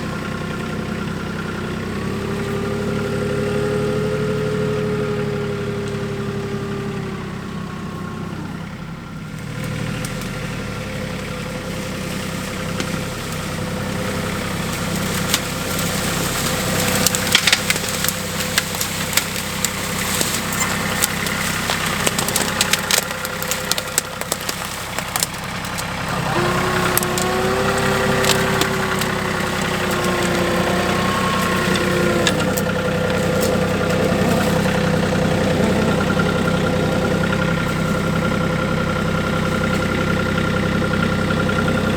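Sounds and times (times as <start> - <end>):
tractor engine running: 0.0 - 41.9
wood cracking and snapping: 11.8 - 41.9.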